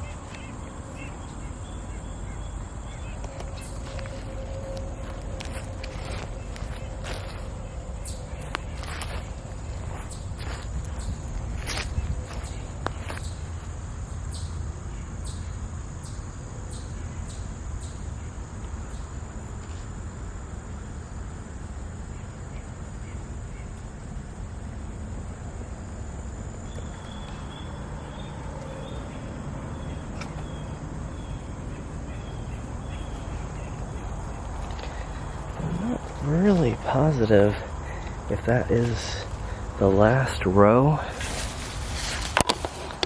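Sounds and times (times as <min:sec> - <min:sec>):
light footsteps: 0:00.0 - 0:13.6, 0:26.7 - 0:43.0
low rumble: 0:00.0 - 0:14.2
insect buzzing drone: 0:00.0 - 0:43.0.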